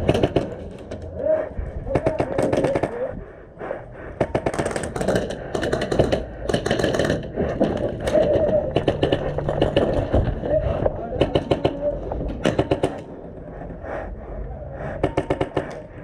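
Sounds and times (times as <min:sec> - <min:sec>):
airsoft guns firing: 0:00.0 - 0:00.9, 0:04.2 - 0:10.3, 0:11.2 - 0:13.0.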